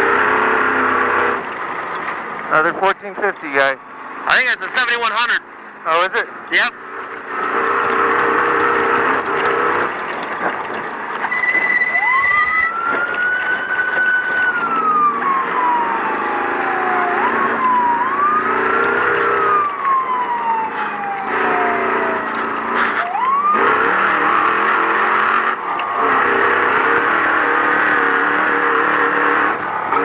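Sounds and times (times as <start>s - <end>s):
high siren-like whine: 0.0s - 30.0s
road noise: 0.0s - 30.0s
truck engine: 0.0s - 30.0s.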